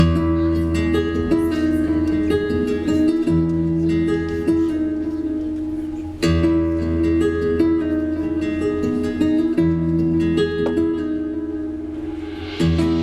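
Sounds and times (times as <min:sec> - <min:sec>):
plucked acoustic guitar melody: 0:00.0 - 0:13.0
held bass notes: 0:09.6 - 0:13.0.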